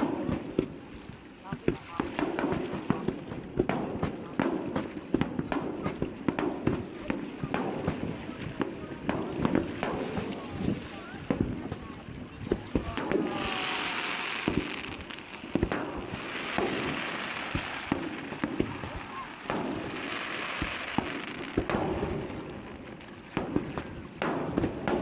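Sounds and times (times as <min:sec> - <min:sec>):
firework shells bursting: 0:12.5 - 0:25.0
crackling hissing firework glitter: 0:12.7 - 0:24.0.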